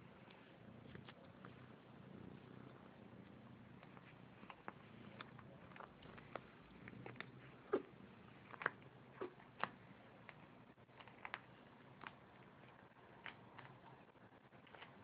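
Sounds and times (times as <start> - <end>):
kitten snoring faintly: 0.0 - 9.4.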